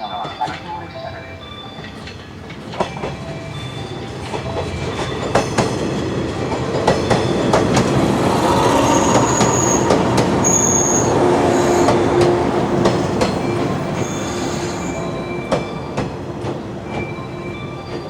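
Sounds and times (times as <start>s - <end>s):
train wheels rolling on track: 0.0s - 18.0s
high wheel squeals: 2.8s - 16.0s.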